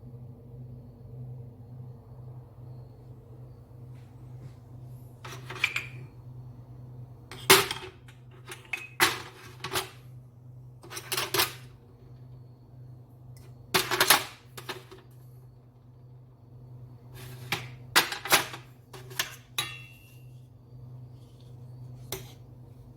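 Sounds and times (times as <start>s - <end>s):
steady low hum: 0.0s - 22.9s
kitchenware clinking and clattering: 5.2s - 6.1s, 7.3s - 10.0s, 10.8s - 11.7s, 13.7s - 15.0s, 17.2s - 20.3s.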